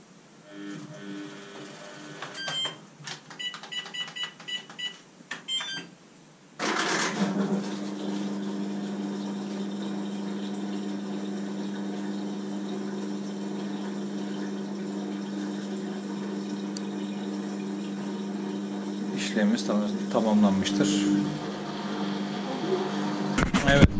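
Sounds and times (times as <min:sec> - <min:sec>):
washing machine hum: 0:00.0 - 0:05.9, 0:06.6 - 0:23.9
water rushing into washing machine: 0:06.6 - 0:23.9.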